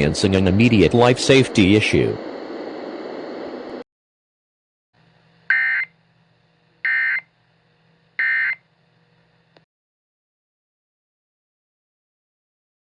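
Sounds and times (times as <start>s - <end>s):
digital data tone bursts: 5.5s - 5.9s, 6.9s - 7.3s, 8.2s - 8.6s.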